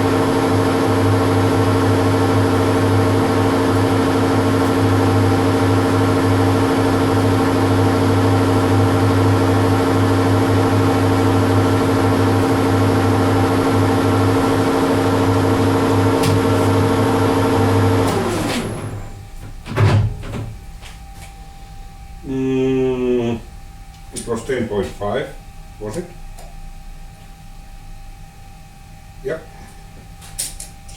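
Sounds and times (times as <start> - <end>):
metal lathe running: 0.0 - 19.0
motor spinning down: 0.0 - 19.1
thump: 19.7 - 20.5.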